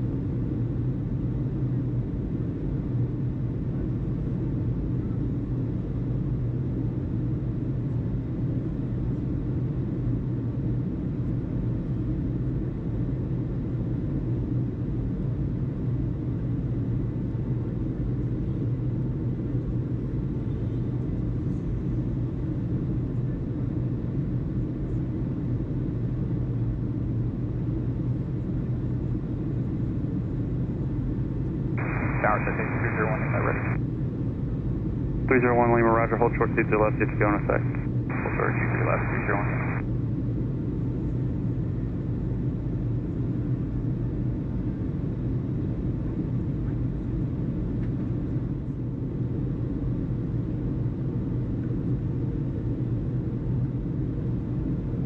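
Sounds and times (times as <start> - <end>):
steady low rumble: 31.8 - 33.8, 35.3 - 39.8.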